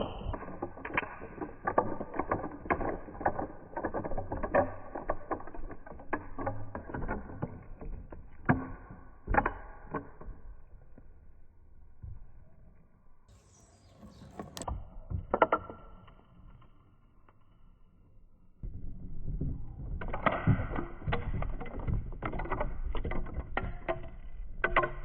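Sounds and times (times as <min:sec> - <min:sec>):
marbles clicking and knocking: 0:00.0 - 0:10.7, 0:19.0 - 0:25.0
marbles rolling rumble: 0:00.0 - 0:12.3, 0:18.6 - 0:25.0.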